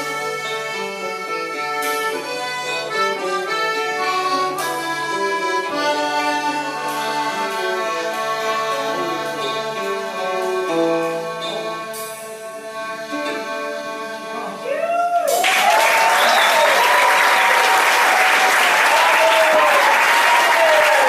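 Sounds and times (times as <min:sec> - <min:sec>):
accordion folk tune: 0:00.0 - 0:14.8.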